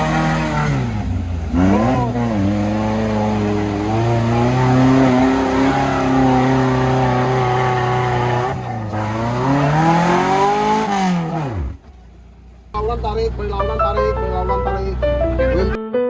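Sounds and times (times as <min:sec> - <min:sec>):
off-road engine revving hard: 0:00.0 - 0:11.9.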